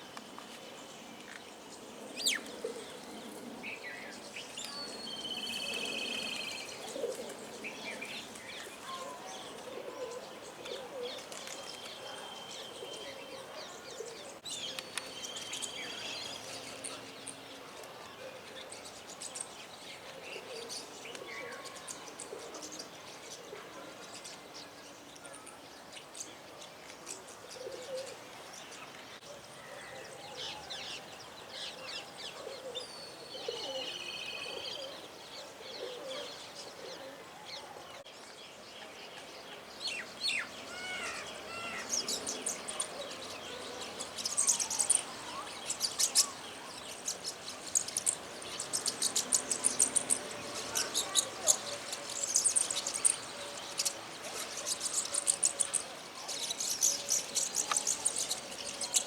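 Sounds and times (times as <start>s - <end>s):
birds chirping and singing: 39.1s - 59.0s.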